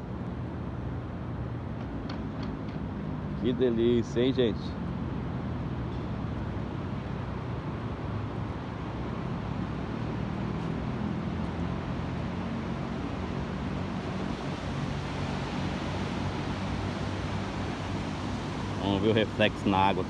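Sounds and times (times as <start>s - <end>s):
sea surf: 14.2s - 20.0s.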